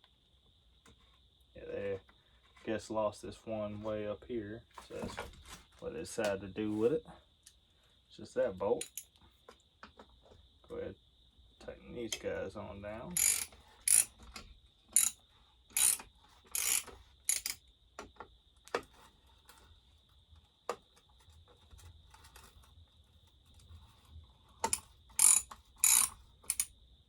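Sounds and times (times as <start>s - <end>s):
ratchet wrench clicking: 8.8s - 9.1s, 13.2s - 14.1s, 15.0s - 17.6s, 24.6s - 26.7s.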